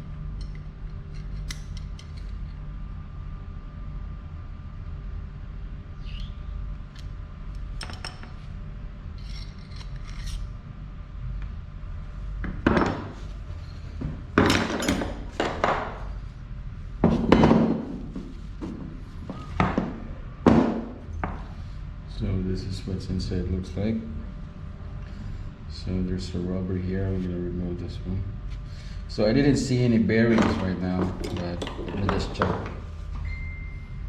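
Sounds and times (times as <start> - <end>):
low hum: 0.0 - 34.0
metal tools scraping on metal: 9.2 - 10.5.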